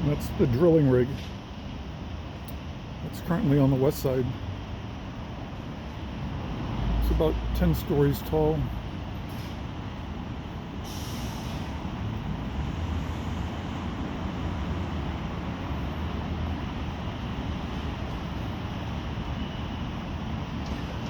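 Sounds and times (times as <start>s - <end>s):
low city rumble: 0.0s - 21.0s
short hiss: 9.3s - 9.6s, 10.8s - 11.8s.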